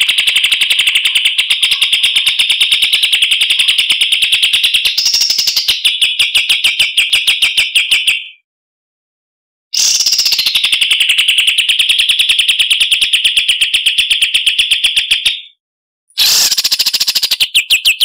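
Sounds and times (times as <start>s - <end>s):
songbird trilling: 0.0s - 6.2s, 9.8s - 11.1s, 16.2s - 18.0s.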